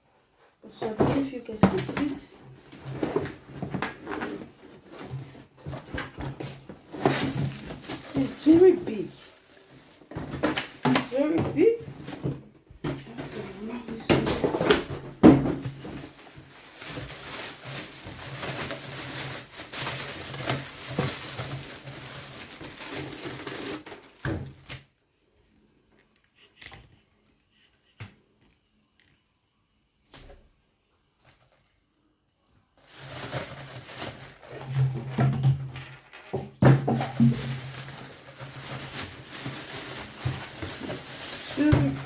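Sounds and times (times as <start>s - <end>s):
packaging rustling and crinkling: 0.8s - 24.9s, 32.8s - 42.0s.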